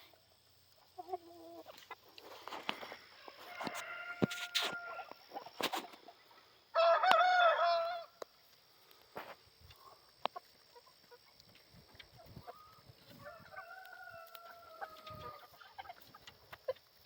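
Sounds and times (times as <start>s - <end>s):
chickens vocalising softly: 0.0s - 17.0s
chicken long drawn-out call: 3.1s - 5.2s, 6.7s - 8.2s, 12.4s - 15.9s.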